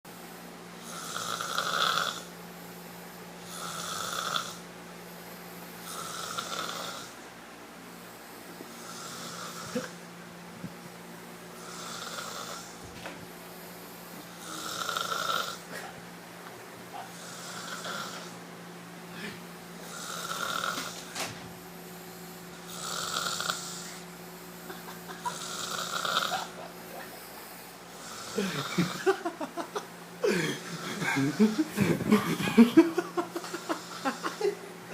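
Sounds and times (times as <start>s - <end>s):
snoring: 0.8s - 2.3s, 3.5s - 4.6s, 5.8s - 7.2s, 8.8s - 10.0s, 11.6s - 12.8s, 14.4s - 15.7s, 17.2s - 18.4s, 19.2s - 21.1s, 22.7s - 24.0s, 25.3s - 26.5s, 28.0s - 29.0s.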